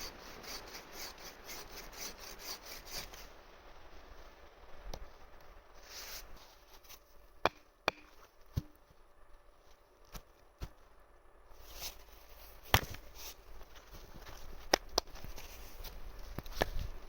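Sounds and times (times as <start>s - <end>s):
faint brushing: 0.0s - 3.4s, 5.8s - 7.3s, 11.5s - 17.0s.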